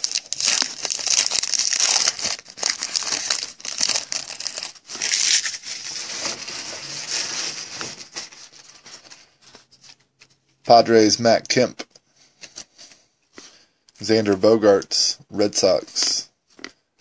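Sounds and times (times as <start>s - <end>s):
foil wrapper tearing and crinkling: 0.0s - 8.1s.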